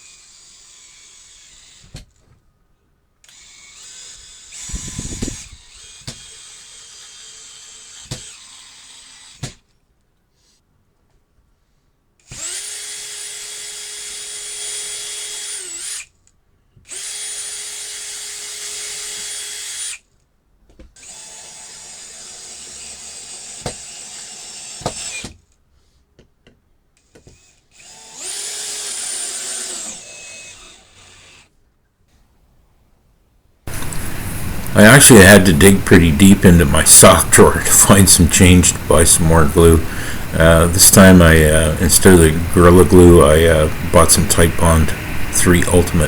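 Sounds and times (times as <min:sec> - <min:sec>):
power drill running: 0:00.0 - 0:02.2, 0:03.2 - 0:09.6, 0:12.2 - 0:16.1, 0:16.9 - 0:20.1, 0:21.0 - 0:25.5, 0:27.0 - 0:31.5, 0:33.7 - 0:46.0.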